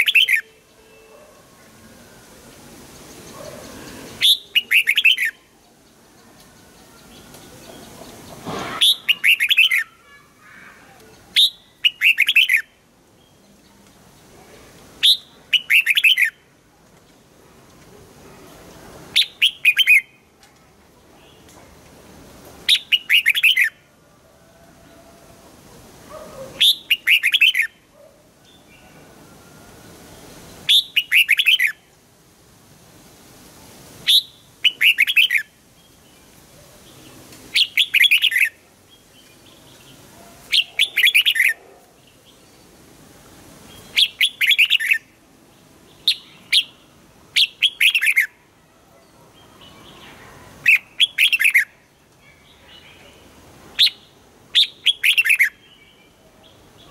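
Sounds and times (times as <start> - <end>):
bulbul singing: 0.0 - 1.2, 3.0 - 6.0.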